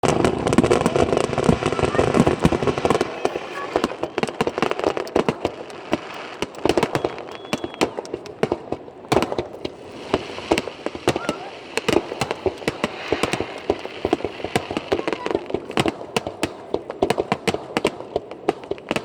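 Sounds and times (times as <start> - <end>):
fireworks cracks and pops: 0.0 - 19.0
faint firework whistle: 0.4 - 8.6, 10.0 - 15.5.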